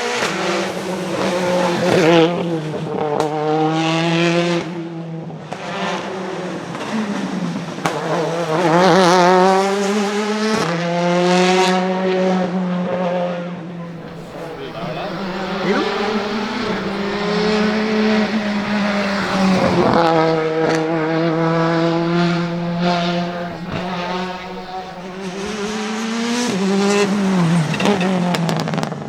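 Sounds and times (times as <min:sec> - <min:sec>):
rally car engine revving: 0:13.9 - 0:29.0.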